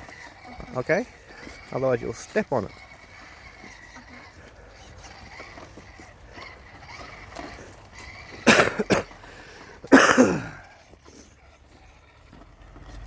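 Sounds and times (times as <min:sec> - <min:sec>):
person coughing: 0:08.4 - 0:09.2, 0:09.9 - 0:10.7.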